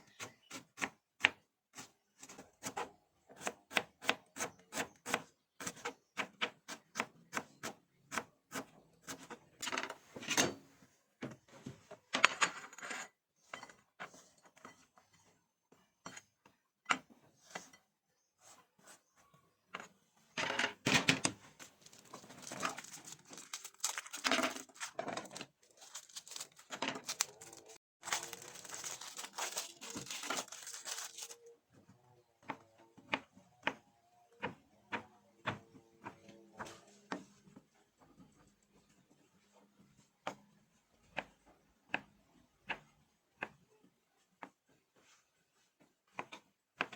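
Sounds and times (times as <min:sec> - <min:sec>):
leaves rustling and tearing: 0:21.9 - 0:24.9, 0:25.6 - 0:31.4.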